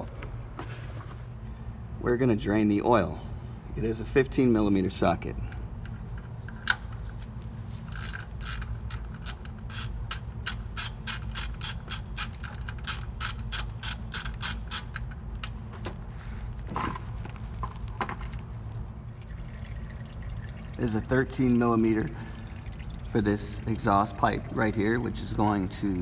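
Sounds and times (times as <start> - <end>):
hand ratchet clicking: 7.8 - 15.6.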